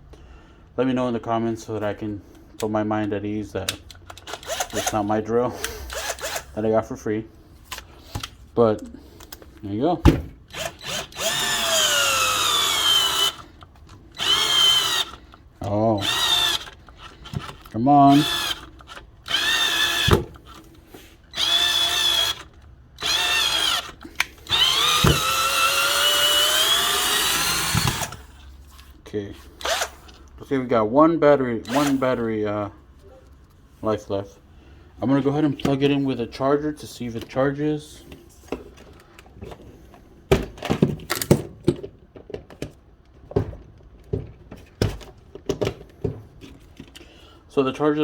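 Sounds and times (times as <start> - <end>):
cordless drill motor whining: 4.2 - 4.9, 5.6 - 6.5, 10.5 - 15.4, 16.0 - 20.6, 21.3 - 28.4, 29.6 - 30.2, 31.7 - 32.1
plastic parts clicking and knocking: 16.1 - 20.8, 40.3 - 47.1.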